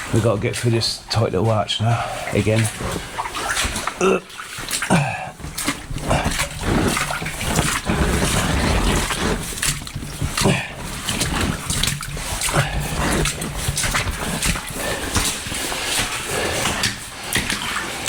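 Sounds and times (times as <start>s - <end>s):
feet splashing in water: 0.0s - 18.0s
person grunting: 4.0s - 4.3s, 4.9s - 5.4s.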